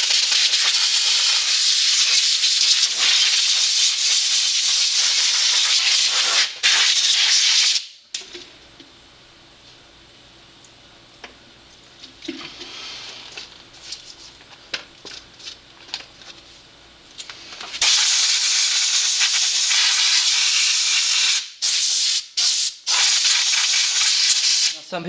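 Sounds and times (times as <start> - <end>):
compressed air hiss: 0.0 - 8.0, 12.6 - 13.4, 17.3 - 25.0.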